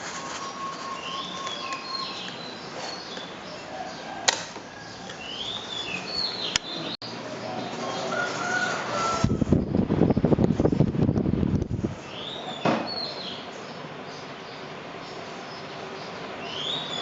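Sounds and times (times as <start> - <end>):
ceiling fan whooshing: 0.0 - 12.6
small birds chirping: 0.2 - 17.0.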